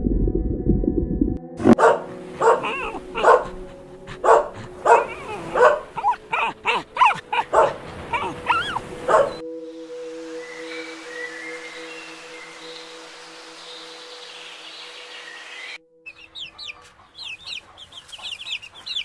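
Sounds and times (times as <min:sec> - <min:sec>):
dog yipping and barking: 0:01.8 - 0:09.4, 0:16.1 - 0:19.0.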